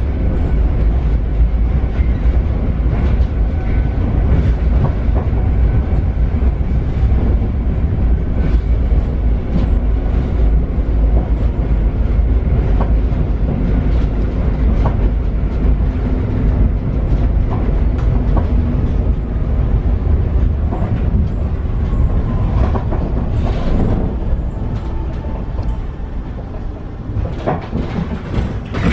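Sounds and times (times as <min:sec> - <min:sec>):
train rumbling along track: 0:00.0 - 0:28.9
wheels clicking over rail joints: 0:04.2 - 0:28.9
train brakes squealing: 0:21.3 - 0:27.0.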